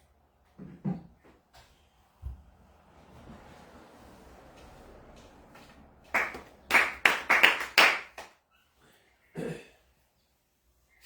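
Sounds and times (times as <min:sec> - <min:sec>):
sharp hand claps: 0:06.1 - 0:08.4.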